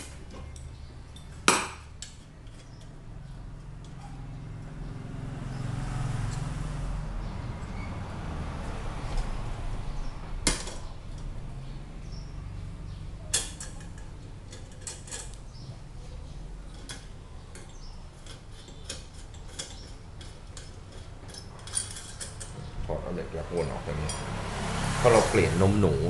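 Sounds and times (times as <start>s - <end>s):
metal lantern parts clinking: 0.0s - 4.0s, 13.2s - 15.7s, 16.6s - 22.8s, 23.8s - 24.4s
sharp metal knocks: 1.2s - 2.9s.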